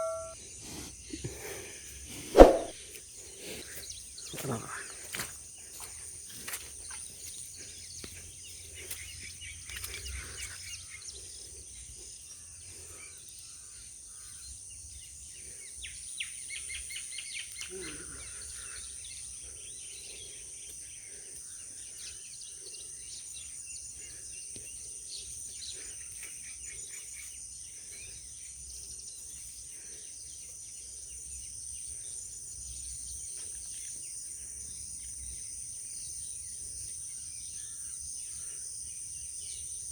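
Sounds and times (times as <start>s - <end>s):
birds chirping: 0.0s - 0.6s.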